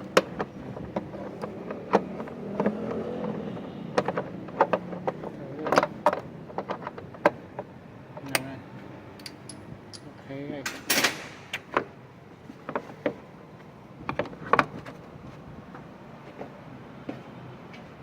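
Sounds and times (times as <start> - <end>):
metal tools clicking and clanking: 9.2 - 11.8.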